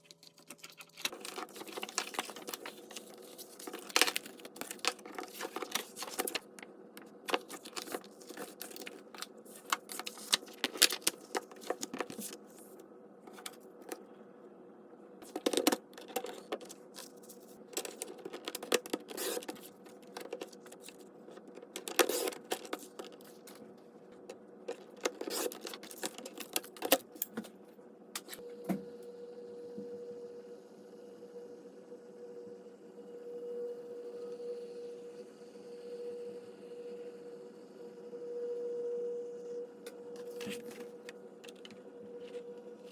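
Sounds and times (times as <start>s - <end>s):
paper pages being handled: 0.0s - 14.0s, 15.2s - 23.6s, 24.2s - 27.5s, 40.2s - 42.9s
faint steady hum: 0.0s - 42.9s.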